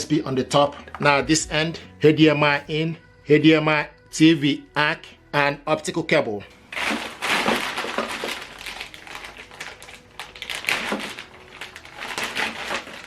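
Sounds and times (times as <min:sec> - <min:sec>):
packaging rustling and crinkling: 0:06.6 - 0:13.0.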